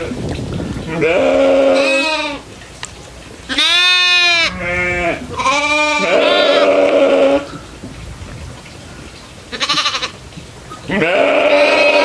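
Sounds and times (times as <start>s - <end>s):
goats bleating: 0.9s - 2.4s, 3.5s - 7.6s, 9.5s - 10.2s, 10.9s - 12.0s.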